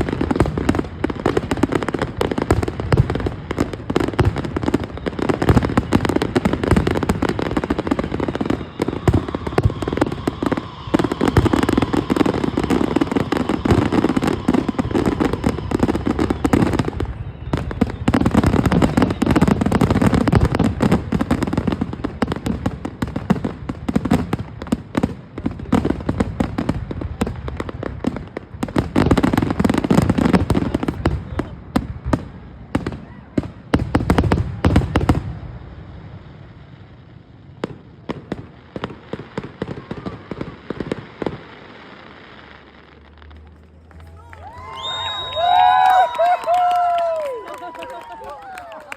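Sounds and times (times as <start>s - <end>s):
fireworks bangs and crackling: 0.0s - 48.9s.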